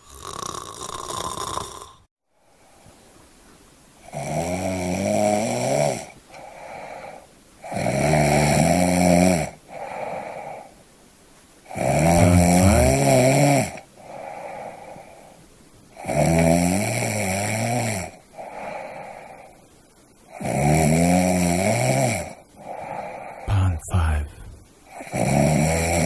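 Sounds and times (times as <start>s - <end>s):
person snoring: 0.0s - 2.0s, 11.7s - 14.9s, 20.4s - 26.0s
soft breath sound: 6.3s - 7.4s, 14.0s - 15.6s, 18.3s - 19.9s.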